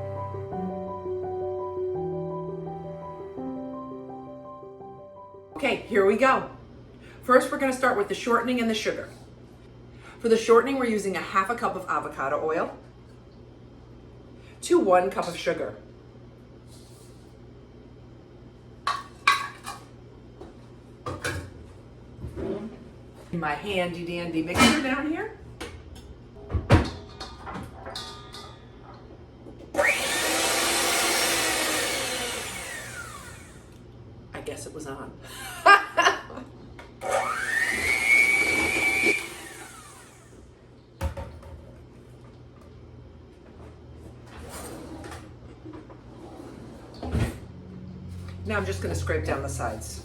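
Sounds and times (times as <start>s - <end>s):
electric mixer motor whine: 29.7s - 33.8s, 37.0s - 40.4s.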